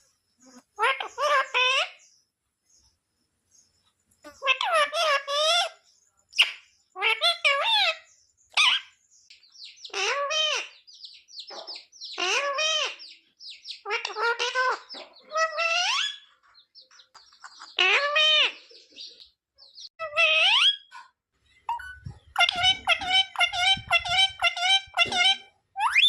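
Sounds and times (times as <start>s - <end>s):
parrot cries: 0.8s - 2.0s, 4.3s - 5.8s, 6.4s - 8.9s, 9.9s - 10.8s, 12.2s - 13.0s, 13.8s - 16.3s, 17.8s - 18.6s, 20.0s - 20.9s, 21.7s - 26.0s.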